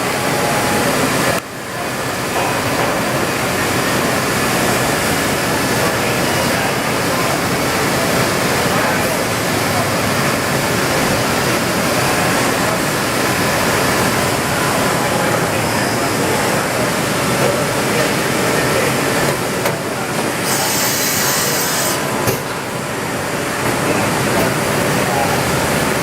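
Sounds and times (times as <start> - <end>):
machining center running: 0.0 - 26.0
sharp high hiss: 20.4 - 22.2.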